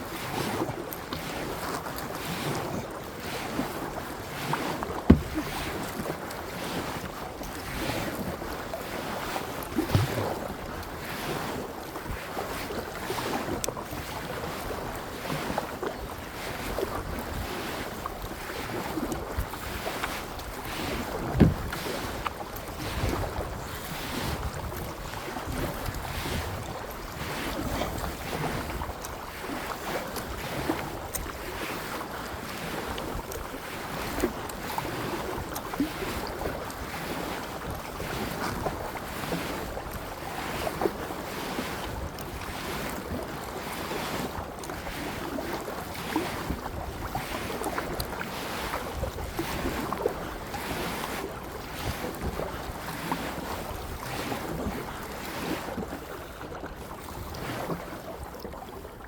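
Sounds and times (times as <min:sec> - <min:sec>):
paddle strokes splashing: 0:00.0 - 0:59.0
water lapping at hull: 0:00.0 - 0:59.0
sharp knocks: 0:05.1 - 0:05.5, 0:09.9 - 0:10.4, 0:21.4 - 0:21.7
wind on microphone: 0:18.7 - 0:29.0.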